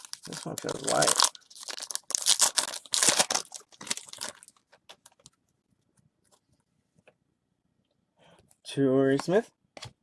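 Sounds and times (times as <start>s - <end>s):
foil wrapper tearing and crinkling: 0.0s - 5.3s.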